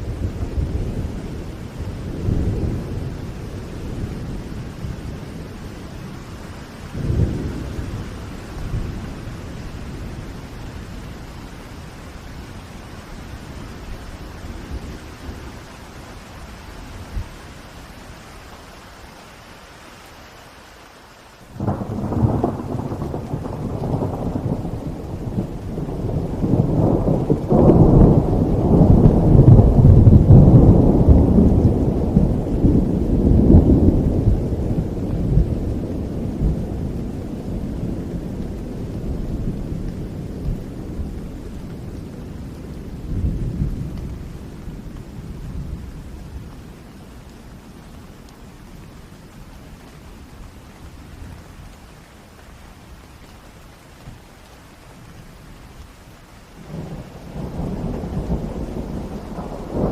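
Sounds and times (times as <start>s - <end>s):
thunder clap and rumble: 0.0s - 11.8s, 21.6s - 51.7s, 56.5s - 59.9s
steady rain: 0.0s - 59.9s.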